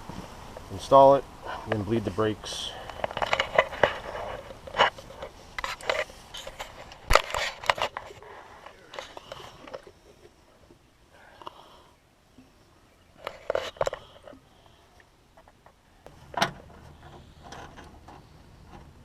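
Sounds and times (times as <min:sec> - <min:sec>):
hand tools scraping and clicking: 0:02.8 - 0:10.3, 0:13.2 - 0:14.4, 0:16.4 - 0:19.0.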